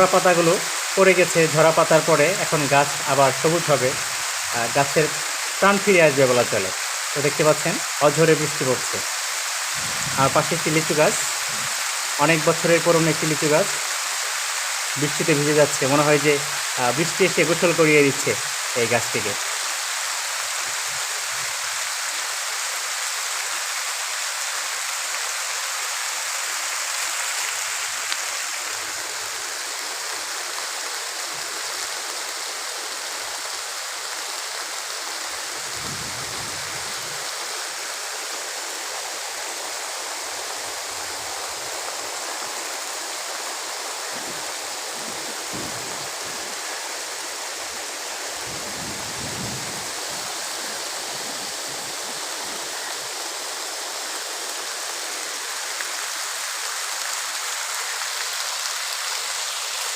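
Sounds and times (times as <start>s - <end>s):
heavy rain pouring: 0.0s - 59.9s.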